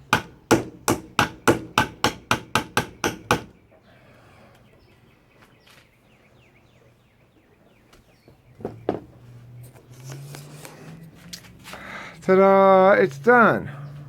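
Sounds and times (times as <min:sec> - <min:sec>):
hammer driving nails into wood: 0:00.1 - 0:03.5.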